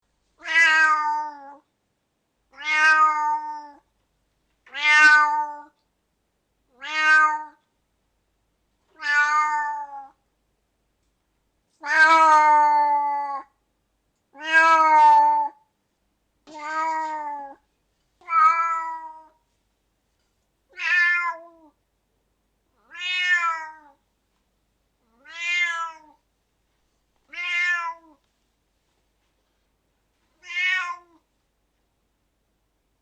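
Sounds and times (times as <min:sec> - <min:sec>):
cat meowing: 0:00.4 - 0:01.6, 0:02.5 - 0:03.8, 0:04.7 - 0:05.8, 0:06.7 - 0:07.6, 0:08.9 - 0:10.2, 0:11.8 - 0:13.6, 0:14.4 - 0:15.6, 0:16.5 - 0:17.6, 0:18.2 - 0:19.4, 0:20.7 - 0:21.8, 0:22.8 - 0:24.0, 0:25.0 - 0:26.2, 0:27.3 - 0:28.2, 0:30.4 - 0:31.3.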